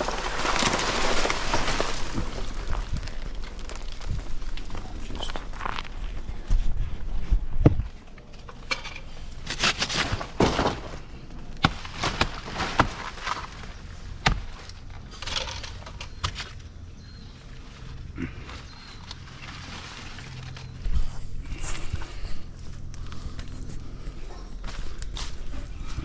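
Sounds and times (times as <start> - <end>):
plant leaves rustling and snapping: 0.0 - 7.0, 17.8 - 26.0.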